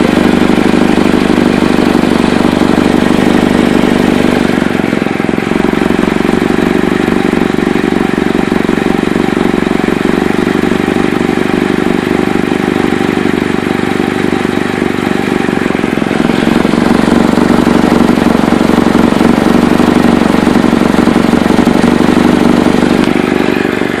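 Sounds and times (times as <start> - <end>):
car engine running: 0.0 - 24.0
loud exhaust leak: 0.0 - 24.0.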